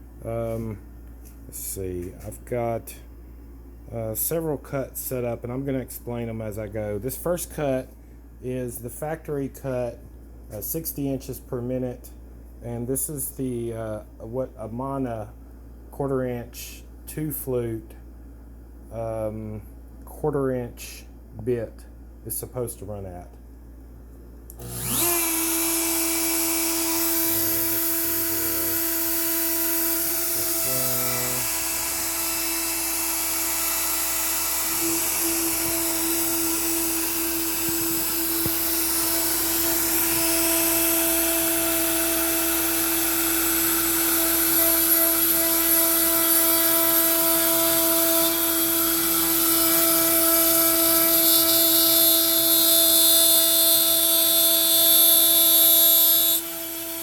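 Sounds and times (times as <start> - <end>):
router whining while cutting wood: 24.5 - 57.0.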